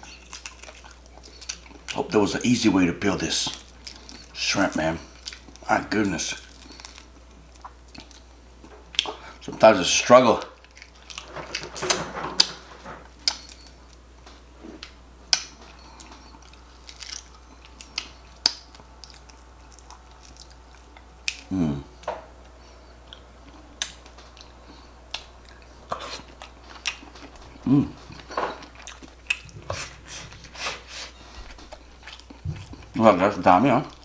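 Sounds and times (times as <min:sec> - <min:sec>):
chewing: 0:00.0 - 0:02.1, 0:03.4 - 0:04.4, 0:05.0 - 0:05.7, 0:06.3 - 0:09.7, 0:10.5 - 0:34.0
person humming: 0:21.4 - 0:22.1, 0:27.5 - 0:28.4.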